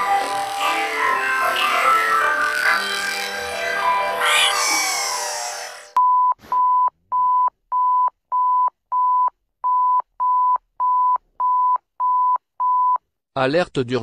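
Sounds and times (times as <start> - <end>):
electronic music: 0.0 - 6.0.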